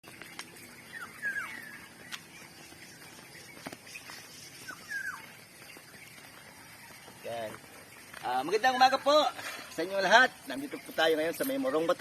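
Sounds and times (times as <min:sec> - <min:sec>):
bird calling: 0:00.0 - 0:11.8
faint outdoor ambience: 0:00.0 - 0:12.0.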